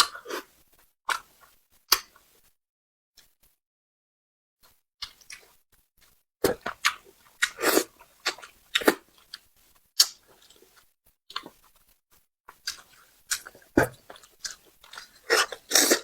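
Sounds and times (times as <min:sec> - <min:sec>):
slurping: 0:06.4 - 0:09.4, 0:12.7 - 0:16.0
person chewing and lip smacking: 0:06.4 - 0:11.8, 0:12.5 - 0:16.0.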